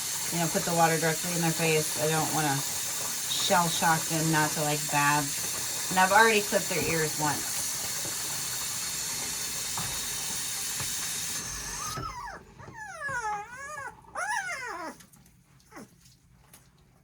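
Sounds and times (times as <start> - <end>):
tap water running: 0.0 - 14.2
puppy whining: 11.4 - 16.3.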